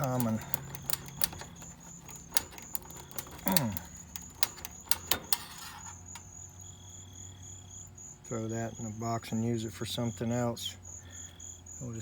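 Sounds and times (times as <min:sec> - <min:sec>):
wiring and tools clicking: 0:00.0 - 0:06.3
insect trill: 0:00.0 - 0:12.0.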